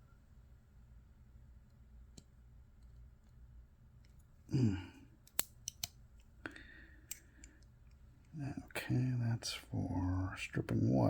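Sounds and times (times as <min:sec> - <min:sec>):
man humming: 0:04.5 - 0:05.0.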